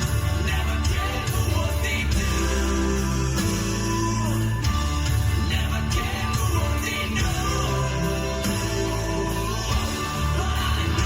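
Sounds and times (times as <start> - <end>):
song with singing and bass: 0.0 - 11.0.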